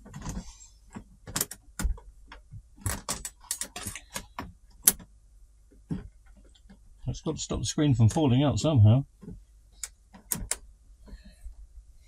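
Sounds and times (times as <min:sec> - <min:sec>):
clicks and knocks of small parts: 0:00.0 - 0:05.1.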